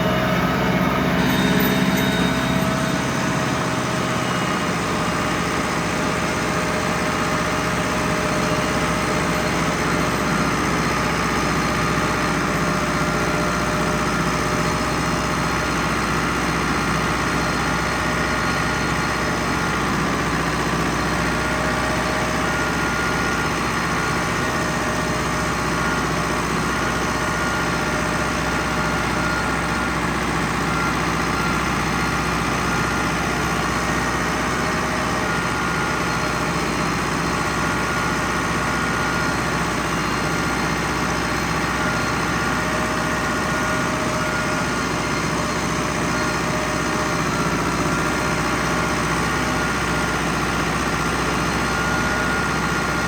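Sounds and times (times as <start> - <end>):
faint whine: 0.0 - 5.4
tractor diesel engine running: 0.0 - 53.0.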